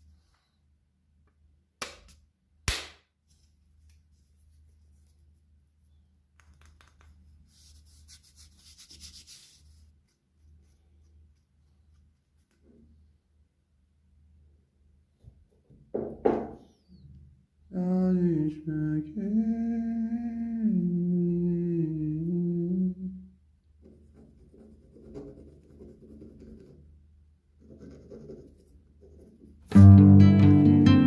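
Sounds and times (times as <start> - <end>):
person humming slowly: 17.7 - 23.4
plucked guitar music: 29.7 - 31.0.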